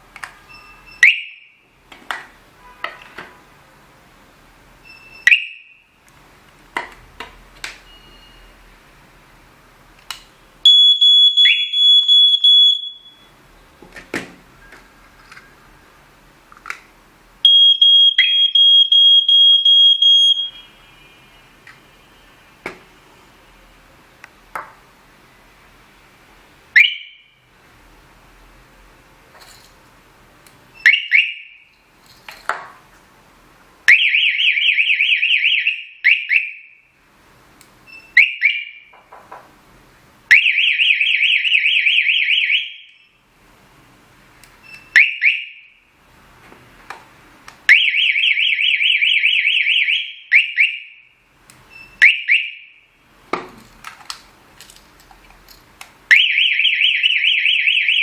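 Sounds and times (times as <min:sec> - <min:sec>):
alarm siren chirps: 0:00.9 - 0:01.6, 0:05.1 - 0:05.8, 0:10.6 - 0:13.3, 0:17.4 - 0:21.2, 0:26.8 - 0:27.3, 0:30.8 - 0:31.6, 0:33.9 - 0:36.9, 0:38.2 - 0:38.9, 0:40.3 - 0:43.2, 0:44.9 - 0:45.8, 0:47.7 - 0:51.2, 0:52.0 - 0:52.9, 0:56.1 - 0:58.0.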